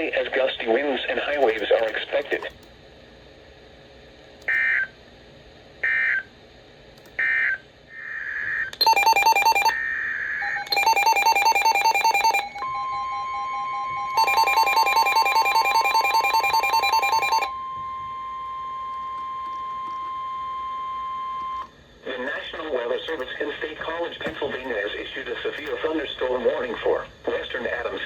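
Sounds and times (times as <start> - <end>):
rapid electronic alarm beeping: 8.8 - 9.8, 10.4 - 18.4.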